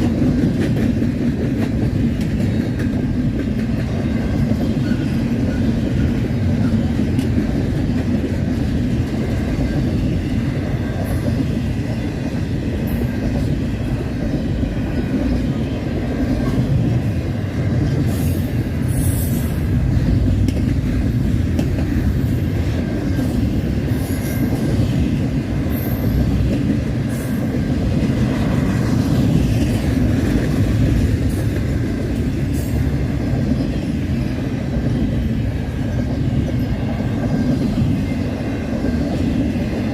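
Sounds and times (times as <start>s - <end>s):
freight train wheels rumbling on rail: 0.0s - 39.9s.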